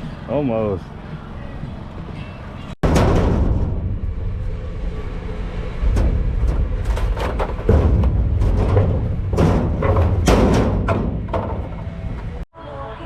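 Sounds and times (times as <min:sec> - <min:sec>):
vehicle engine rumbling: 0:00.0 - 0:12.5
knocks and rattles: 0:02.8 - 0:04.3, 0:05.6 - 0:12.5.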